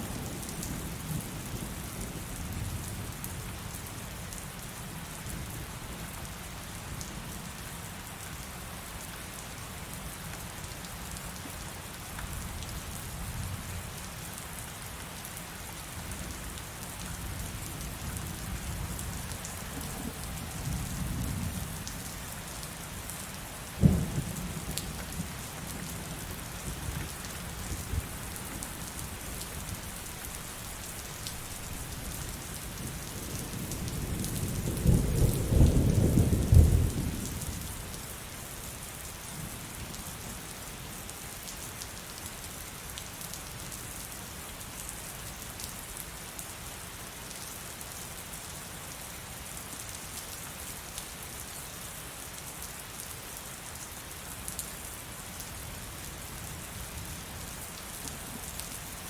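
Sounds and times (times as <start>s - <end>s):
heavy rain: 0.0s - 59.0s
low rolling thunder: 23.8s - 26.8s, 32.8s - 37.7s.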